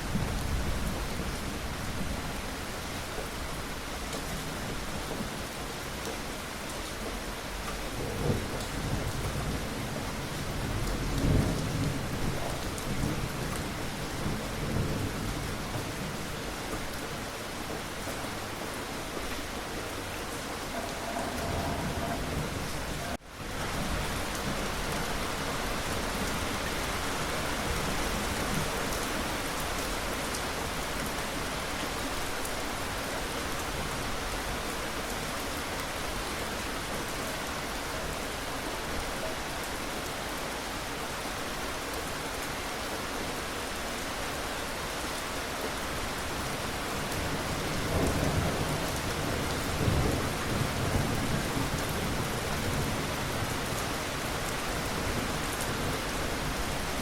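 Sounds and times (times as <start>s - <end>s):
steady rain: 0.0s - 57.0s
thunder rumbles: 7.8s - 16.6s, 17.6s - 24.9s.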